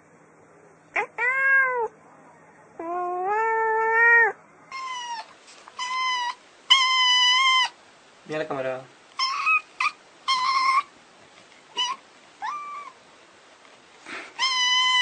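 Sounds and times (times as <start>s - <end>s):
cat meowing: 1.0s - 1.9s, 2.8s - 7.8s, 11.8s - 13.0s, 14.3s - 15.0s.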